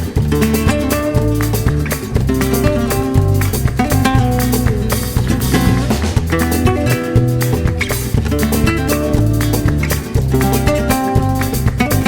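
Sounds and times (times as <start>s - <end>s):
acoustic guitar background music: 0.0s - 12.0s.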